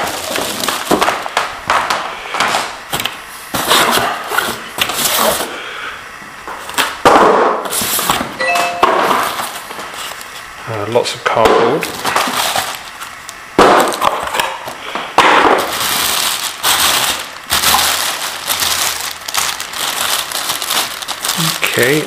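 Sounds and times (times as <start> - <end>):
cardboard scraping and rustling: 3.5 - 5.5, 7.6 - 8.3, 12.0 - 12.8.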